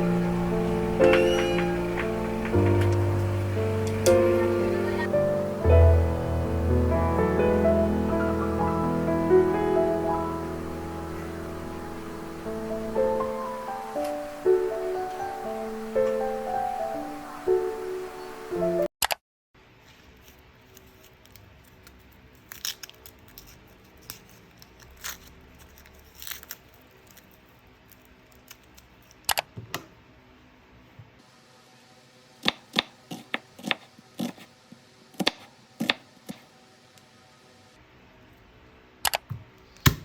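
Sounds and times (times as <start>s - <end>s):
background music: 0.0s - 18.9s.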